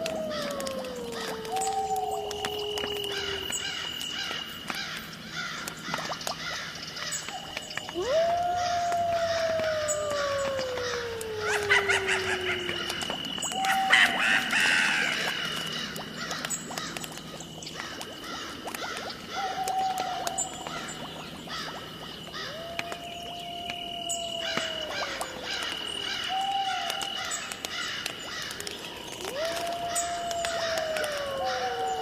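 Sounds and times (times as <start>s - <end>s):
long rising and falling howls: 0.0s - 4.4s, 7.7s - 15.5s, 22.4s - 27.2s, 29.1s - 32.0s.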